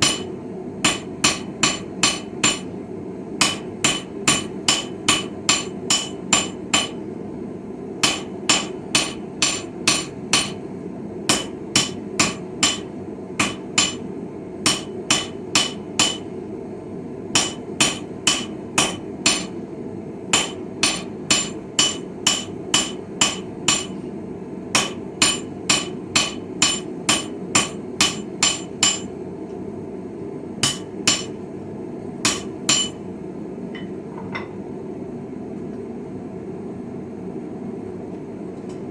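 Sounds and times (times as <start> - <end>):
hammer striking steel on anvil: 0.0 - 2.7, 3.4 - 7.1, 8.0 - 10.7, 11.3 - 16.4, 17.4 - 19.6, 20.3 - 24.1, 24.7 - 29.2, 30.6 - 31.4, 32.2 - 33.0, 33.8 - 34.6.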